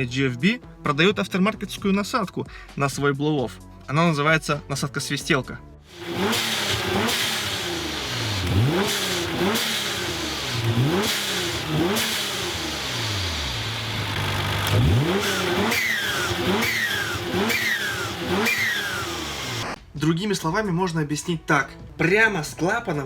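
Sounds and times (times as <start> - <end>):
turbocharged car engine revving: 5.9 - 19.8.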